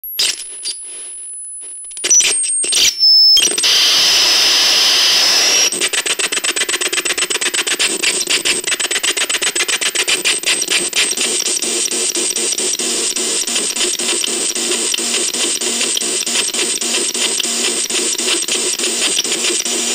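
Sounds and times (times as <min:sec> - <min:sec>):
short high beeps: 0:02.0 - 0:05.8
static hiss: 0:03.6 - 0:05.7
fast pulsing crackle: 0:03.6 - 0:19.9.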